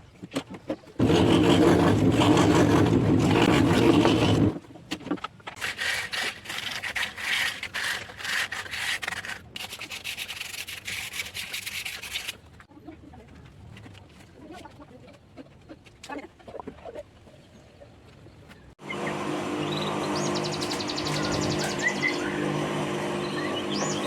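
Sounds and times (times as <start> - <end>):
power tool motor running: 1.0 - 4.6, 18.8 - 24.0
wood being sanded by hand: 1.0 - 4.6, 5.6 - 12.4, 19.0 - 24.0.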